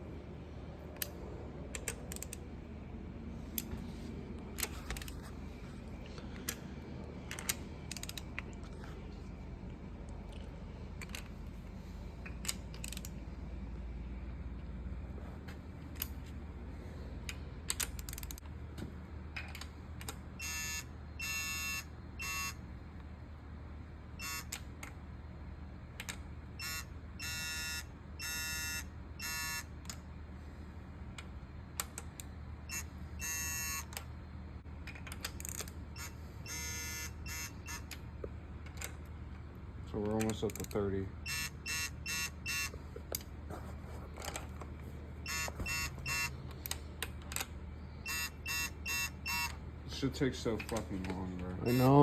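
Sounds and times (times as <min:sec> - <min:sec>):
low steady hum: 0:00.0 - 0:52.0
torque wrench beeping: 0:20.4 - 0:22.6, 0:24.2 - 0:24.6, 0:26.6 - 0:29.7, 0:32.7 - 0:33.9, 0:36.0 - 0:37.9, 0:41.2 - 0:42.8, 0:45.2 - 0:46.4, 0:48.0 - 0:49.6, 0:51.7 - 0:52.0.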